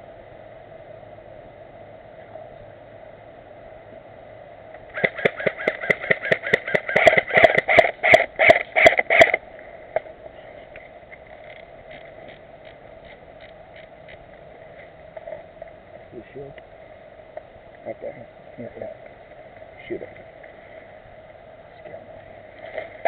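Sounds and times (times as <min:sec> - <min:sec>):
airsoft gunshots: 0:05.0 - 0:09.4.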